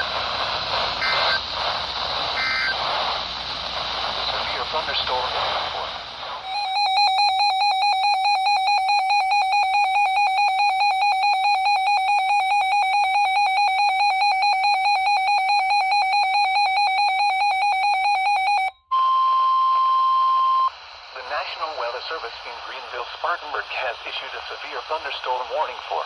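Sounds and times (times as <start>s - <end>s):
rapidly pulsing electronic beep: 1.0s - 1.4s, 2.3s - 2.8s, 6.5s - 18.8s
steady warning tone: 1.0s - 1.4s, 2.4s - 2.8s, 6.4s - 20.6s.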